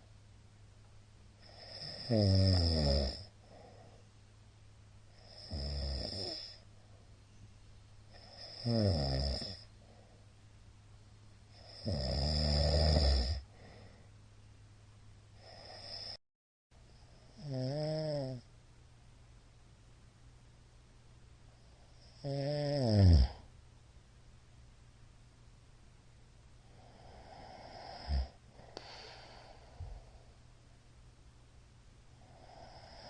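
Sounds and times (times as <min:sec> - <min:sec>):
man snoring loudly: 0:01.4 - 0:03.3, 0:05.2 - 0:06.6, 0:08.2 - 0:09.6, 0:11.6 - 0:13.4, 0:15.4 - 0:16.2, 0:17.4 - 0:18.4, 0:22.2 - 0:23.4, 0:26.8 - 0:28.4, 0:32.3 - 0:33.0.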